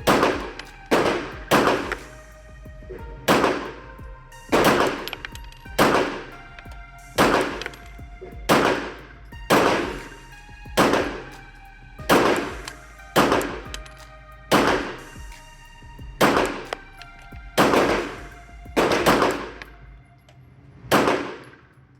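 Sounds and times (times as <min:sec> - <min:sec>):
pistol shots: 0:00.1 - 0:02.0, 0:03.3 - 0:03.6, 0:07.2 - 0:07.7, 0:08.5 - 0:08.9, 0:09.5 - 0:10.0, 0:14.5 - 0:14.9, 0:17.6 - 0:18.1, 0:18.8 - 0:19.5, 0:20.9 - 0:21.5.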